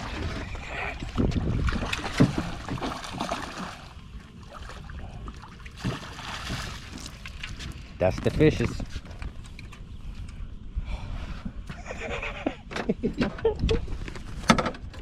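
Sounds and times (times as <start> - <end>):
knocks and clatter on boat: 0.0 - 3.6, 5.8 - 9.8, 12.7 - 15.0.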